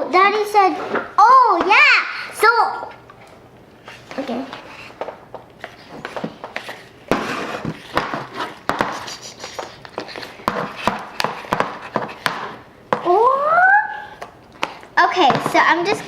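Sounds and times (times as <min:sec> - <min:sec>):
wet slime being stirred: 0:02.9 - 0:13.2
child's voice rising in pitch: 0:13.1 - 0:14.2.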